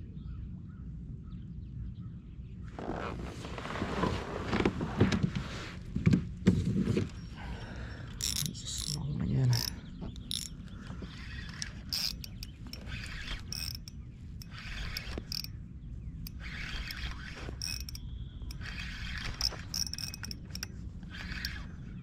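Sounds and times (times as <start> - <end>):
fishing reel clicking and whirring: 8.0 - 15.5, 16.3 - 22.0.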